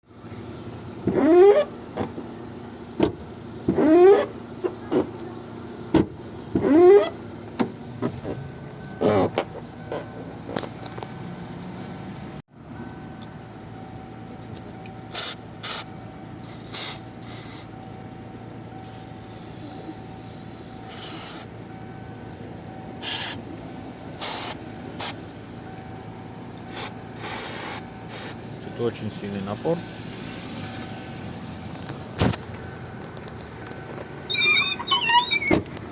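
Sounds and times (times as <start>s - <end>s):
aerosol can spraying: 18.9s - 21.5s, 26.7s - 28.4s.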